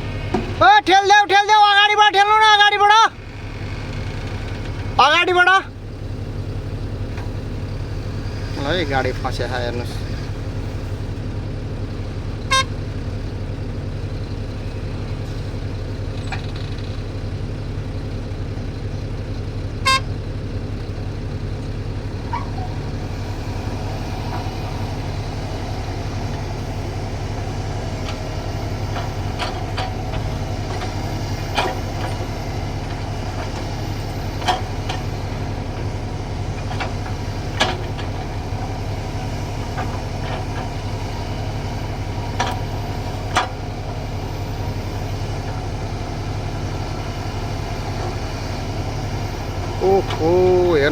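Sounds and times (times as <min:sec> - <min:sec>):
machinery whine: 0:00.0 - 0:18.9, 0:19.7 - 0:50.9
heavy diesel engine running: 0:00.0 - 0:50.9
short horn toots: 0:12.5 - 0:12.8, 0:19.8 - 0:20.1.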